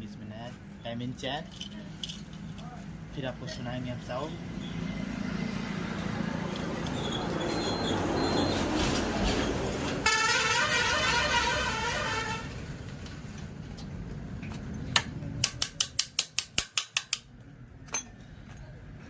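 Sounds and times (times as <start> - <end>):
vehicle horn: 10.0 - 12.6.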